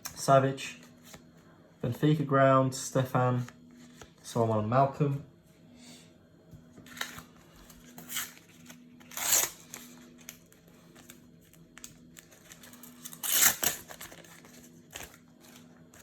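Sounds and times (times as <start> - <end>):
paper cards sliding and rustling: 12.2 - 16.0.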